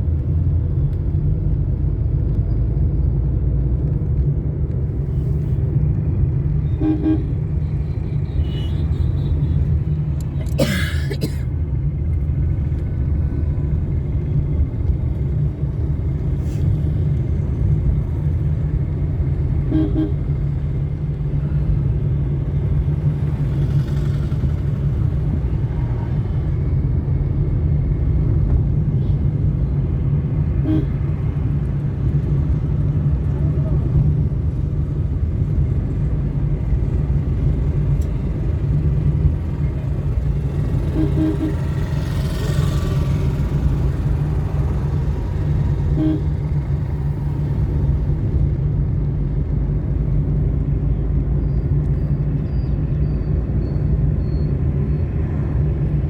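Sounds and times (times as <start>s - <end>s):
road traffic rumble: 0.0s - 56.0s
vehicle horn toots: 6.7s - 7.3s, 8.3s - 9.4s, 19.7s - 20.2s, 30.6s - 31.0s, 40.8s - 41.9s, 45.9s - 46.4s.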